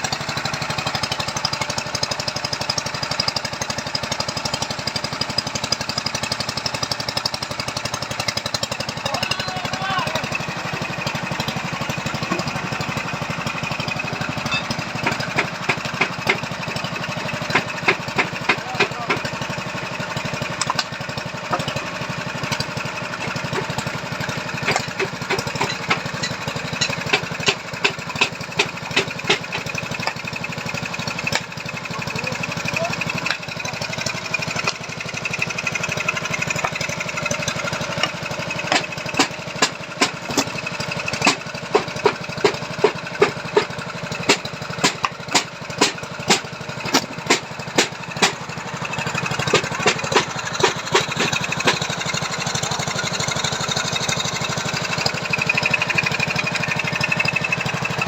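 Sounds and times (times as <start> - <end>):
small engine running: 0.0 - 58.0.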